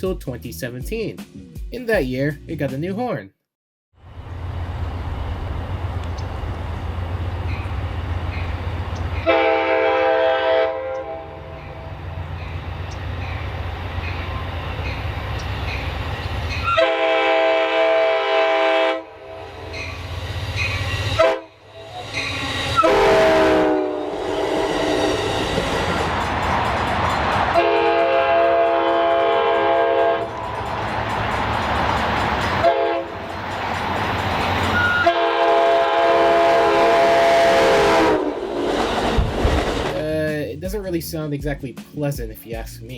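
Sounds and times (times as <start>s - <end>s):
passing train rumble: 4.0s - 41.2s
chord train horn blasts: 9.2s - 12.2s, 16.6s - 25.6s, 27.5s - 30.7s, 32.6s - 33.3s, 34.8s - 38.9s.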